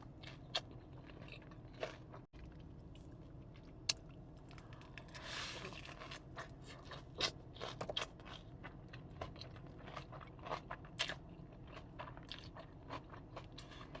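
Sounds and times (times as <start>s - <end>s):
crunchy biting and chewing: 5.1s - 14.0s.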